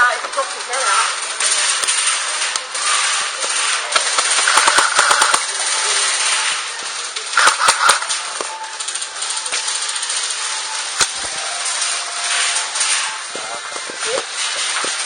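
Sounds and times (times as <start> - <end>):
airsoft rifle rapid bursts: 3.0 - 6.6, 7.4 - 8.4.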